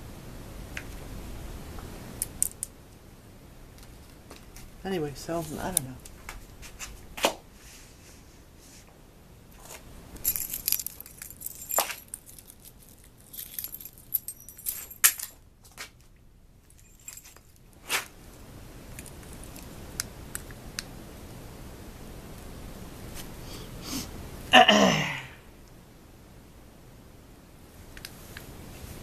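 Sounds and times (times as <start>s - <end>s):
small hard objects jingling: 10.2s - 15.4s, 16.6s - 17.7s
light ticks: 28.0s - 28.5s.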